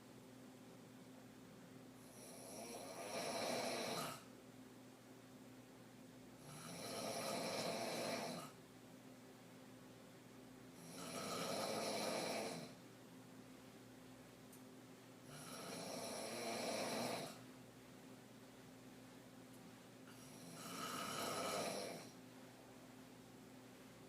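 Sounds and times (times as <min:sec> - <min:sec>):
woman snoring: 0:02.0 - 0:04.3, 0:06.4 - 0:08.6, 0:10.8 - 0:12.8, 0:15.2 - 0:17.4, 0:20.1 - 0:22.2.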